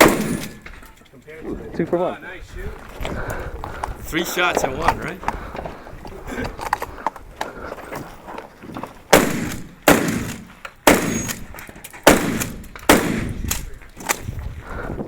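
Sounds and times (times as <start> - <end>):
gunshots with echo: 0.0 - 0.6, 9.1 - 11.4, 12.1 - 13.4.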